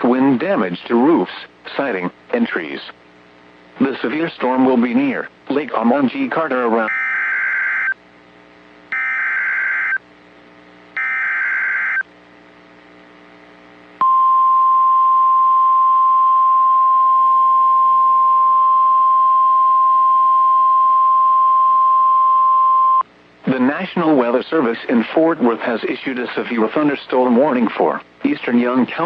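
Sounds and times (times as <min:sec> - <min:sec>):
steady warning alarm tone: 0:06.9 - 0:08.0, 0:08.9 - 0:10.0, 0:11.0 - 0:12.0.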